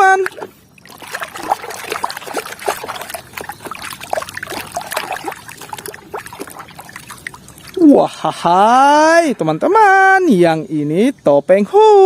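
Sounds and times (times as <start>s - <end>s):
water trickling and splashing: 0.0s - 9.4s.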